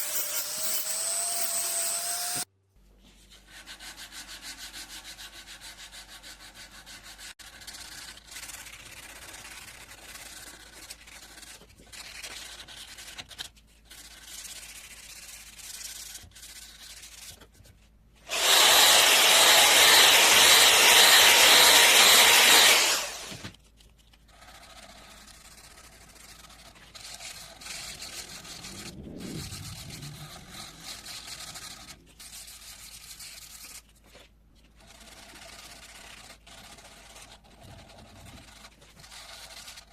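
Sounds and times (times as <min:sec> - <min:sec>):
sanding strokes on metal blade: 0:00.0 - 0:02.5, 0:03.4 - 0:13.2, 0:24.3 - 0:33.8, 0:34.8 - 0:39.9.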